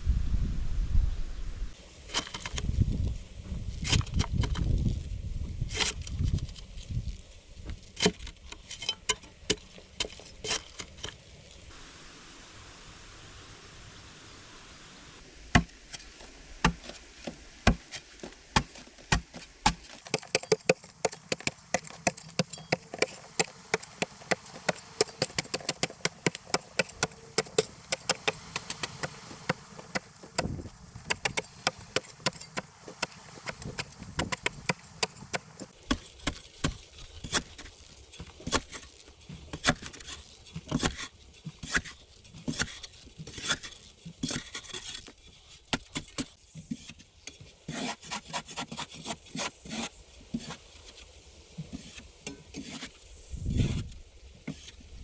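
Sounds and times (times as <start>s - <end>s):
hand tool chopping wood: 2.0s - 4.9s, 5.6s - 11.7s, 15.4s - 46.9s.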